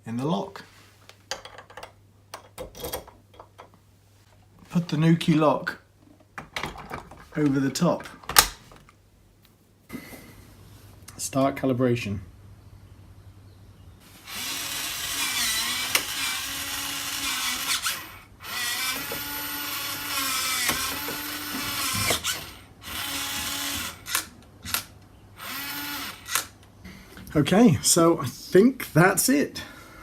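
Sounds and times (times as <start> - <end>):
electric motor whirring: 14.2 - 24.3, 25.4 - 26.5.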